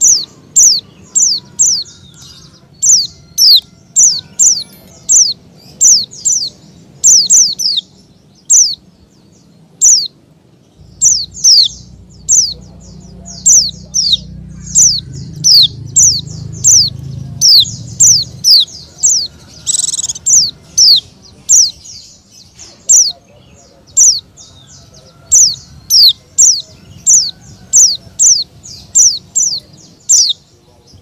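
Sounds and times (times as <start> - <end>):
bird calling with high notes: 0.0 - 8.9, 10.8 - 23.3
low hum: 10.8 - 21.4.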